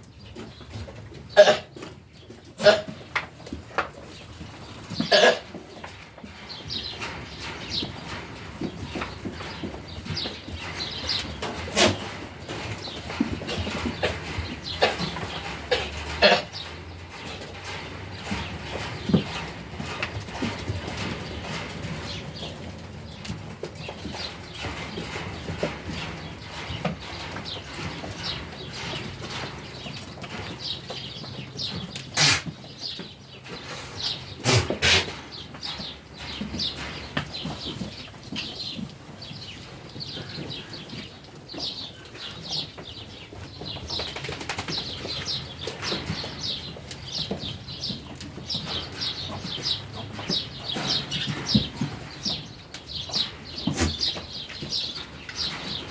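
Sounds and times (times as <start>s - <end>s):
small birds chirping: 0.0s - 55.9s.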